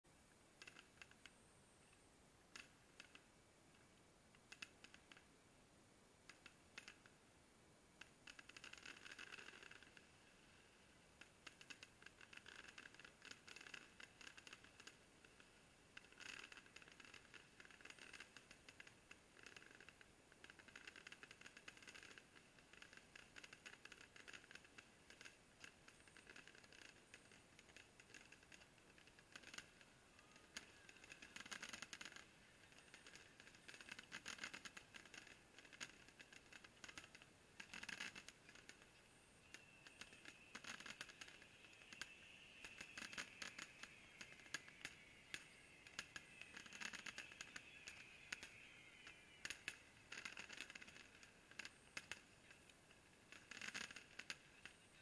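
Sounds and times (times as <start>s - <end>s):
distant fireworks crackling: 0.2s - 5.5s, 6.2s - 55.0s.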